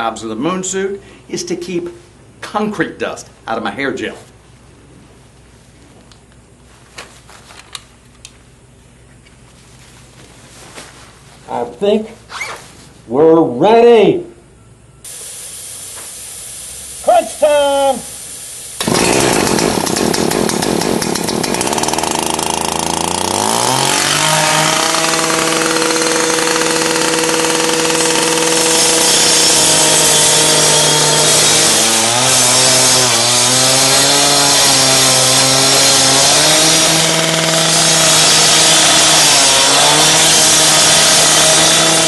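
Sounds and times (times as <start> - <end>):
concrete saw cutting concrete: 18.8 - 42.0.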